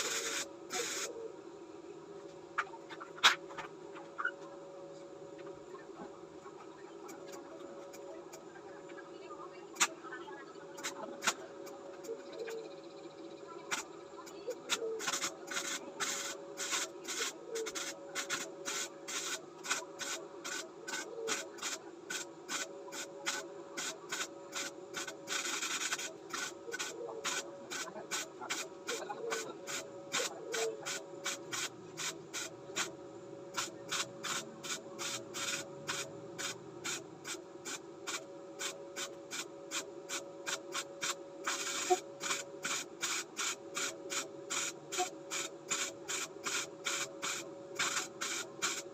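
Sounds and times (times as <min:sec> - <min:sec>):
welder arc crackling: 0:00.0 - 0:01.1, 0:13.7 - 0:32.9, 0:33.5 - 0:48.9
steady welder hum: 0:00.0 - 0:01.3, 0:09.7 - 0:12.9, 0:13.6 - 0:48.9.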